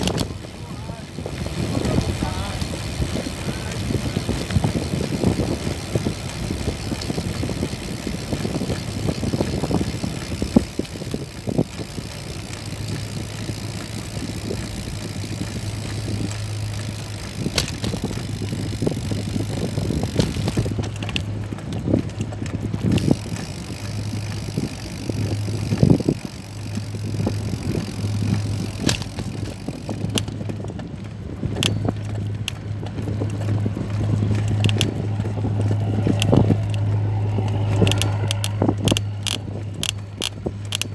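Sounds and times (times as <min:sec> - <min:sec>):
motor humming: 0:00.0 - 0:40.9
outdoor noise: 0:00.0 - 0:40.9
knocks and clicks: 0:31.5 - 0:40.9.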